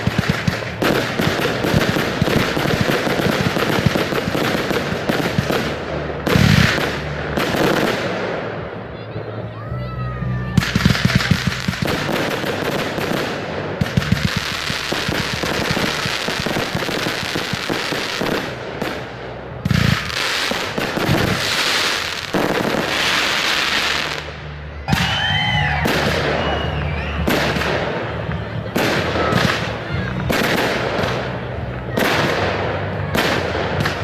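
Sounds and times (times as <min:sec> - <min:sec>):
sharp firework bangs: 0:00.0 - 0:08.6, 0:25.8 - 0:34.0
fireworks crackling: 0:00.0 - 0:34.0
firework whistling: 0:10.6 - 0:31.3.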